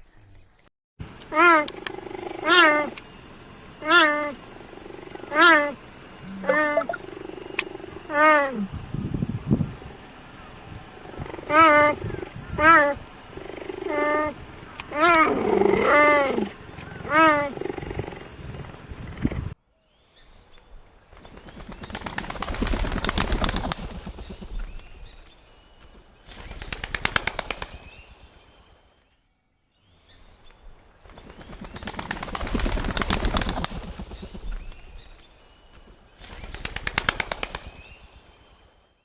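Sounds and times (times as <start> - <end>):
big cat calling: 1.3 - 3.0, 3.8 - 8.9, 10.3 - 19.5.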